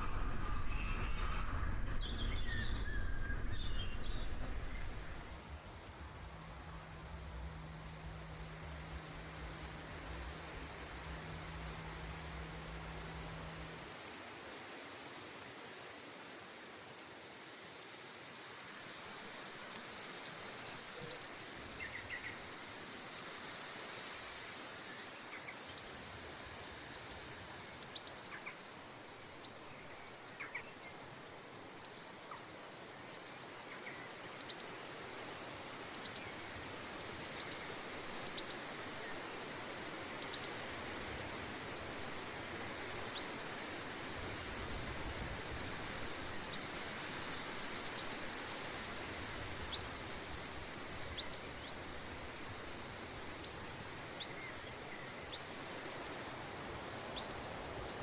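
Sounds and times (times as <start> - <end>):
small birds chirping: 0.0 - 5.4
steady background hiss: 0.0 - 58.0.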